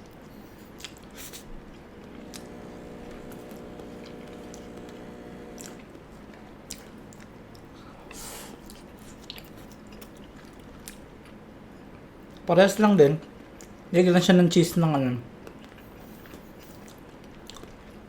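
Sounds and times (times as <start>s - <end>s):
close-up chewing: 0.0s - 11.4s, 15.4s - 18.0s
steady hum: 1.6s - 8.1s.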